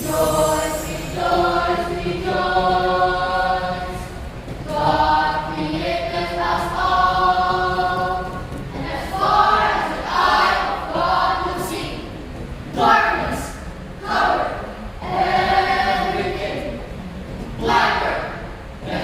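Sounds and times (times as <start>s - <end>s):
choir singing sustained notes: 0.0s - 12.2s, 14.0s - 17.0s.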